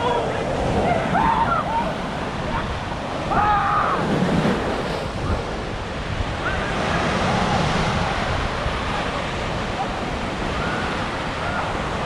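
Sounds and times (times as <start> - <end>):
ocean surf breaking: 0.0 - 12.0
wind buffeting microphone: 0.0 - 12.0
faint shout: 0.8 - 2.0, 3.3 - 4.1.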